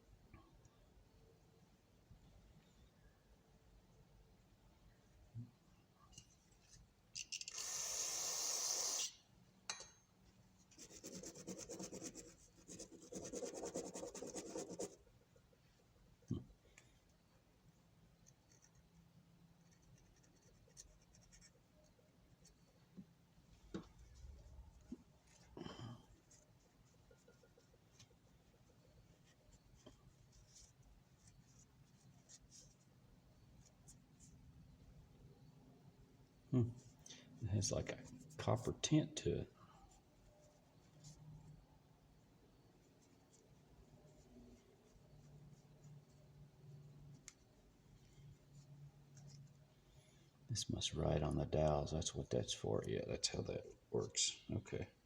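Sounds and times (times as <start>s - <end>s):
small ratchet parts scratching and clicking: 7.1s - 8.1s.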